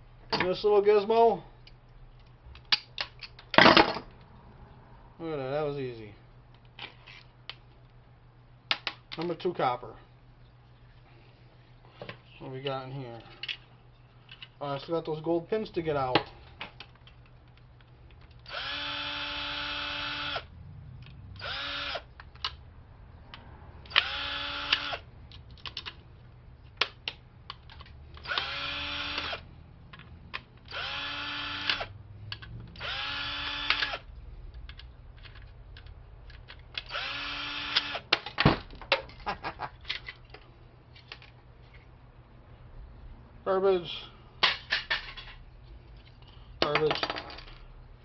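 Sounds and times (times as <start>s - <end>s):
cordless drill bursts: 18.5s - 20.5s, 21.4s - 22.1s, 23.9s - 25.0s, 28.2s - 29.4s, 30.7s - 31.9s, 32.8s - 34.0s, 36.9s - 38.1s.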